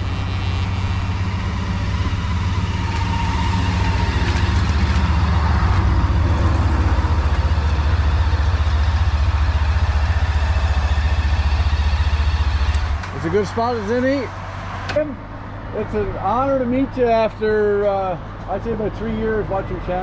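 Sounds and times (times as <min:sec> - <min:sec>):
motorcycle engine idling: 0:00.0 - 0:14.4.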